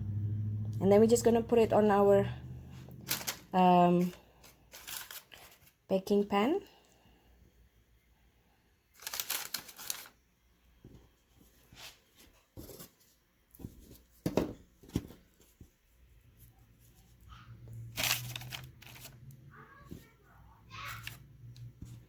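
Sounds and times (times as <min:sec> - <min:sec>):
rustles: 0:02.7 - 0:05.8.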